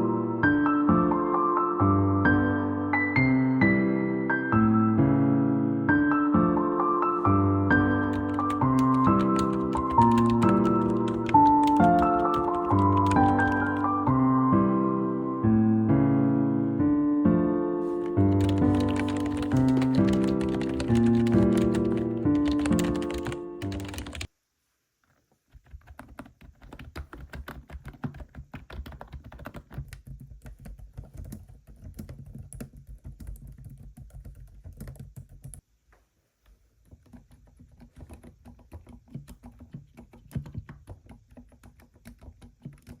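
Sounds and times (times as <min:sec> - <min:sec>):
music: 0:00.0 - 0:24.3
fast keyboard typing: 0:07.7 - 0:14.1, 0:18.0 - 0:24.3, 0:25.5 - 0:35.6, 0:36.8 - 0:43.0.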